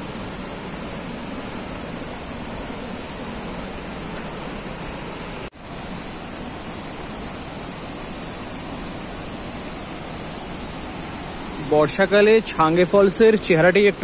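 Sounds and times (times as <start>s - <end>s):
rush of falling water: 0.0s - 14.0s.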